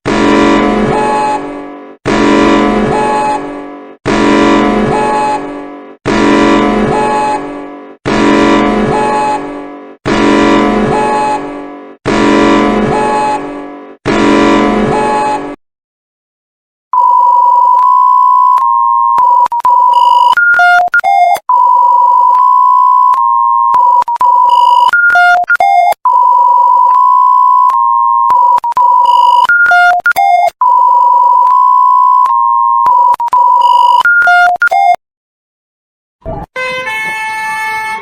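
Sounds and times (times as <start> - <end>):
loud steady alert beep: 17.0 - 35.0
short beeps jumping in pitch: 17.0 - 35.0.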